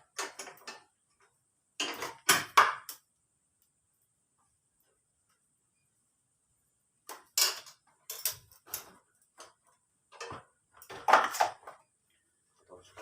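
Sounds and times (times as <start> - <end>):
metal tools clinking: 7.3 - 9.0.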